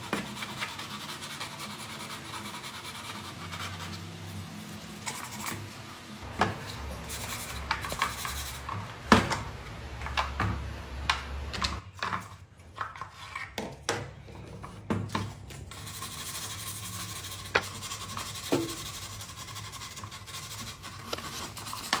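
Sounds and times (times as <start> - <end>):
wood scraping on wood: 6.2 - 12.2.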